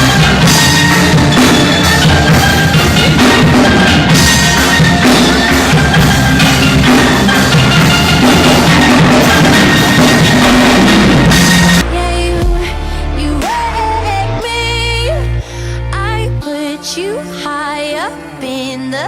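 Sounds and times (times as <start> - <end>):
steel drum band playing pop: 0.0 - 14.0.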